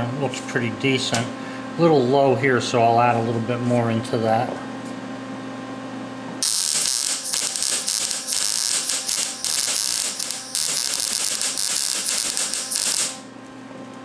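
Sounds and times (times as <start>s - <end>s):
welding arc crackling: 6.4s - 13.3s.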